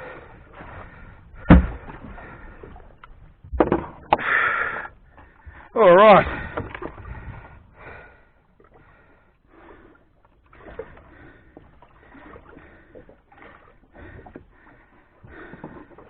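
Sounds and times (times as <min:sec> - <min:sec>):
water swishing: 0:00.0 - 0:16.0
gear knocking on boat: 0:01.4 - 0:02.4.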